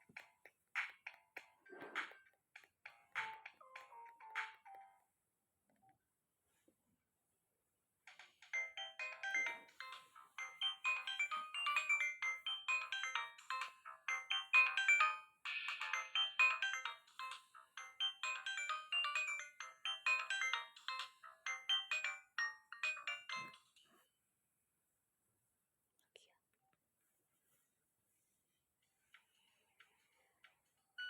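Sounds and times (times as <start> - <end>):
mobile phone ringtone beeping: 8.5 - 23.6.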